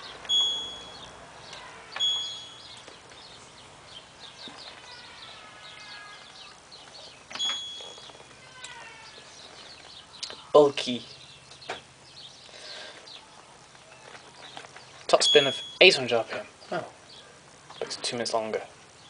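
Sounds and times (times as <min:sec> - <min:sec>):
faint falling chirps: 0:00.0 - 0:03.2
control panel beeps: 0:00.3 - 0:01.1, 0:02.0 - 0:02.8, 0:07.3 - 0:08.2, 0:15.2 - 0:15.8.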